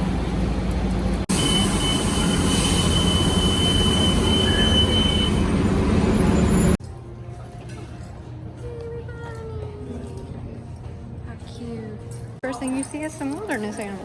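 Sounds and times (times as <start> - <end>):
large vehicle rumbling: 0.0 - 6.8
thin high whine: 1.3 - 6.8.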